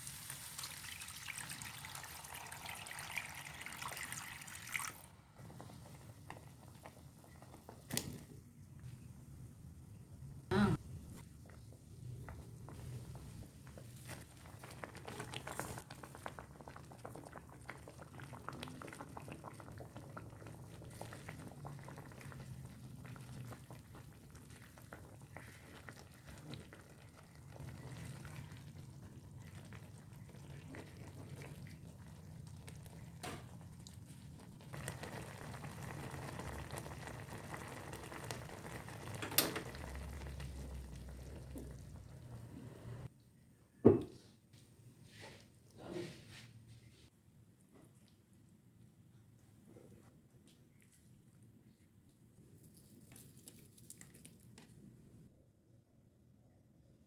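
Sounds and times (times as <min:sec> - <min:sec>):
broth bubbling in a pot: 0:00.0 - 0:09.0, 0:10.5 - 0:43.2.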